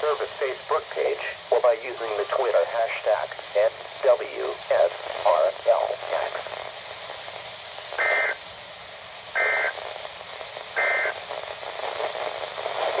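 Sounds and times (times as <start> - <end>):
radio static hiss: 0.0 - 13.0
shrill two-tone digital data bursts: 8.0 - 8.4, 9.4 - 9.8, 10.8 - 11.2.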